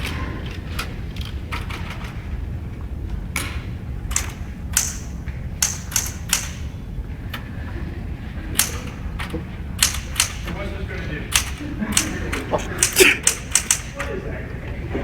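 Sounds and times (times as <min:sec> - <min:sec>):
steady low hum: 0:00.0 - 0:15.0
typewriter keys clacking: 0:04.1 - 0:06.8, 0:08.6 - 0:10.6, 0:11.3 - 0:14.2.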